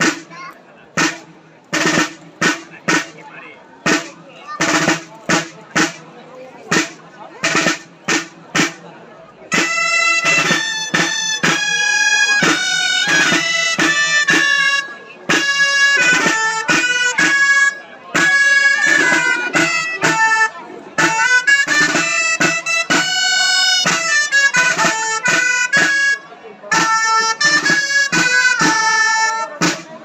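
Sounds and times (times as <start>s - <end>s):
shawm playing dance tune: 9.5s - 30.0s.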